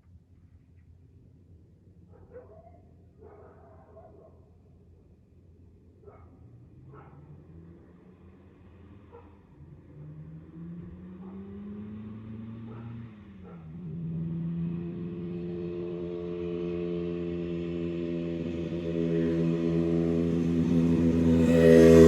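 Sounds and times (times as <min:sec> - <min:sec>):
motorcycle engine running: 0:10.6 - 0:22.0.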